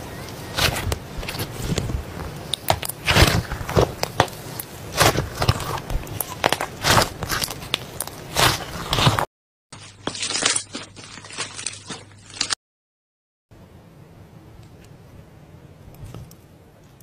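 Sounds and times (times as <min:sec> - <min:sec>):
slime squeezed by hand: 0:02.6 - 0:09.2.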